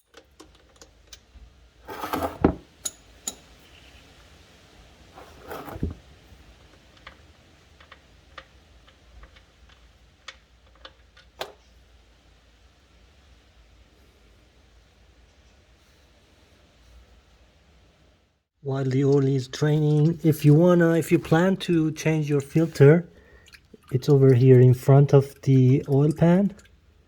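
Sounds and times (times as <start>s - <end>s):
scraping rustles: 1.8s - 2.7s, 5.1s - 6.4s.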